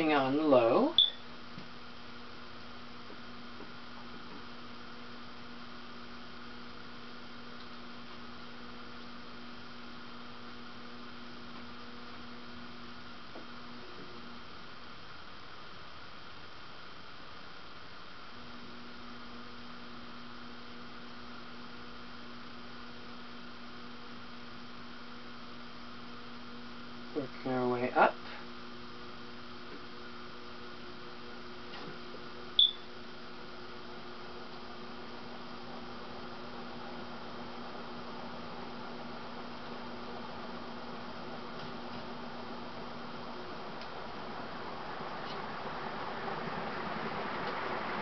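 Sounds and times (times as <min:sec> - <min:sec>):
ceiling fan motor hum: 0:00.0 - 0:48.0.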